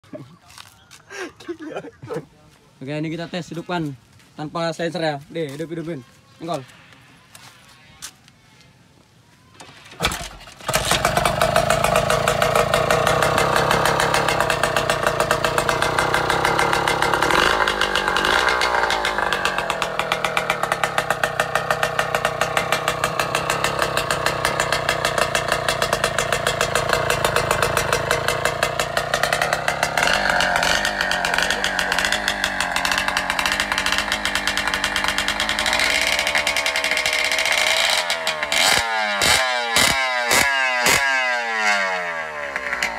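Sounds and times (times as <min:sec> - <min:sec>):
motorcycle kick-start: 0:09.6 - 0:42.9
two-stroke motorcycle engine buzzing: 0:10.0 - 0:42.9.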